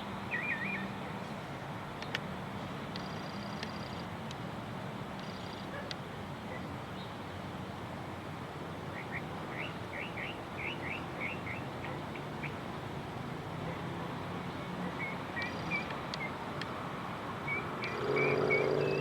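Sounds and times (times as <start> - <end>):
birds chirping: 9.0 - 12.6, 14.5 - 16.4, 17.5 - 19.0.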